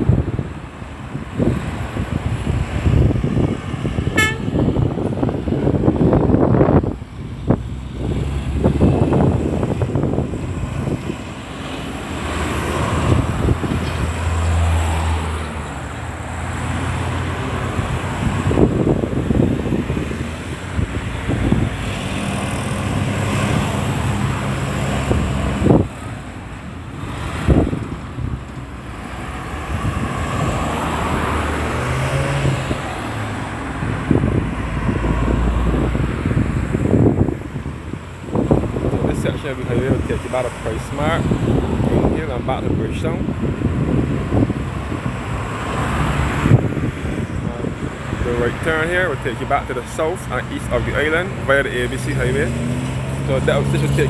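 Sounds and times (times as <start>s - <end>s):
cars and trucks passing: 0.0s - 54.0s
car horn toot: 4.1s - 4.8s.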